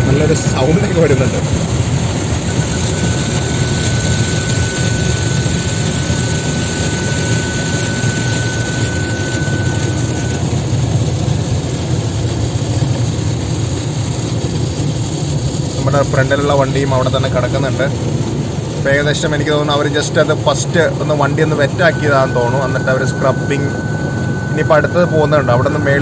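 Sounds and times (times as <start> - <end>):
parking sensor high beep: 0.0 - 10.6, 20.8 - 26.0
car wash water spraying: 0.0 - 22.7.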